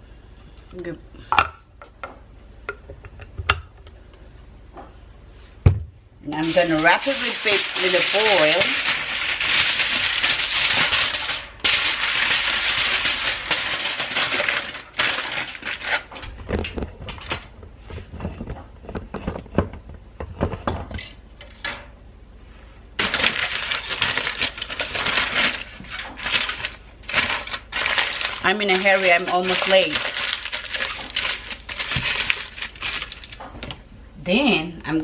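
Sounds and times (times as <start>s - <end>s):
aluminium foil crinkling: 6.3s - 17.6s, 23.0s - 33.7s.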